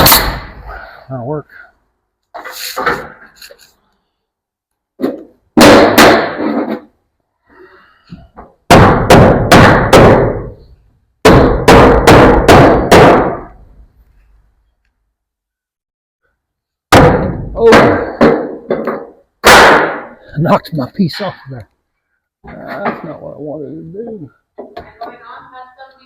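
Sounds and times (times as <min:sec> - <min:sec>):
hammer nailing wooden boards: 0:05.0 - 0:06.9, 0:08.7 - 0:10.6, 0:11.2 - 0:13.6, 0:16.9 - 0:20.1.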